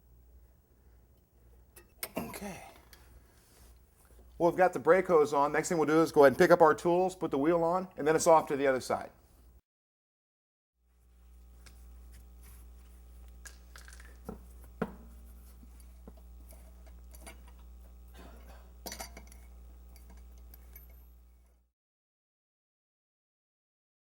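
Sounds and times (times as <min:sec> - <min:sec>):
steady low hum: 0:00.0 - 0:09.6, 0:10.9 - 0:21.7
metal hand tools clinking: 0:18.8 - 0:21.0.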